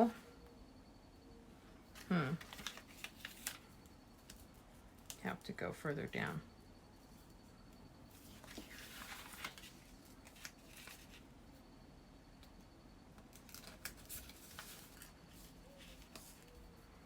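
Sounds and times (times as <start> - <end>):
paper scraping rustle: 2.4 - 3.6, 8.1 - 11.2, 13.5 - 16.6.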